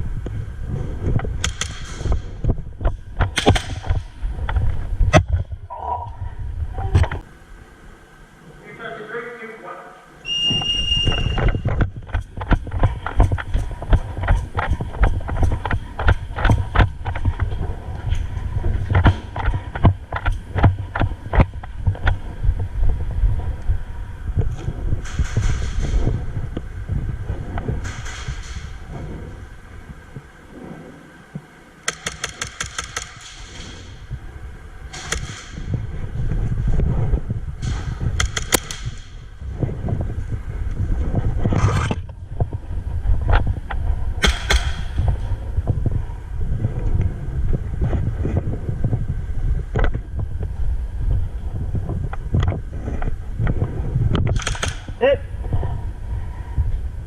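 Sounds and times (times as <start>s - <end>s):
wind on microphone: 0.0s - 7.6s, 10.3s - 57.0s
shrill whistle blast: 10.2s - 11.6s.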